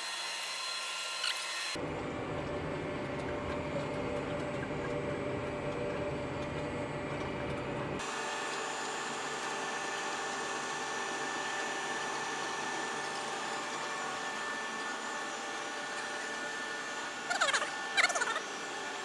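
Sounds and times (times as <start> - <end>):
machine tool humming and whining: 0.0 - 19.0
wavering machine squeal: 13.8 - 19.0.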